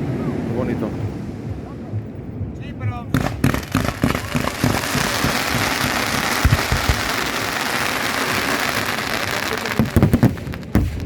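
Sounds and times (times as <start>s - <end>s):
fireworks low booms: 1.0s - 11.0s
fireworks crackling: 3.1s - 11.0s
fireworks sharp bangs: 3.1s - 11.0s.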